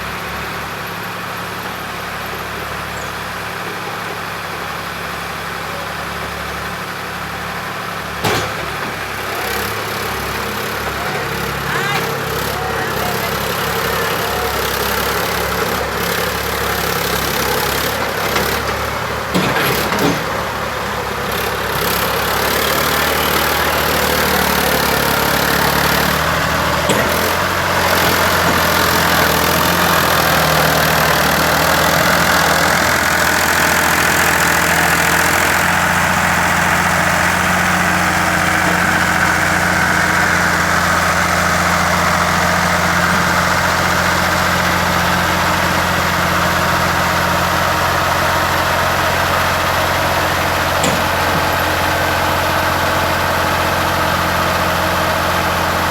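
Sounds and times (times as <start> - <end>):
diesel engine running: 0.0 - 55.9
short knocks: 50.8 - 52.0.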